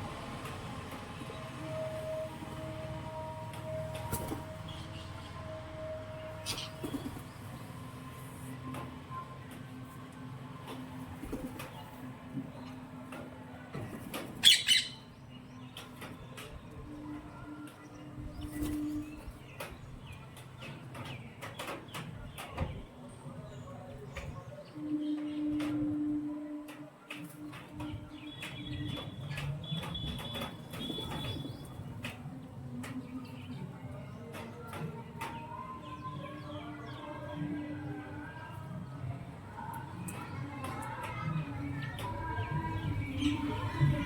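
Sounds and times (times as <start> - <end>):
bird squawking: 14.4 - 15.0.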